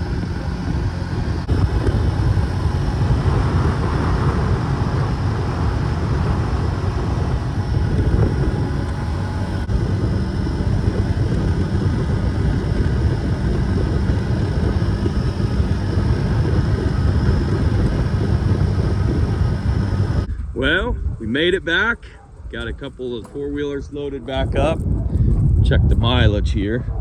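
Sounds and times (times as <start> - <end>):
vehicle engine running: 0.0 - 20.3
wind and road noise: 0.0 - 27.0.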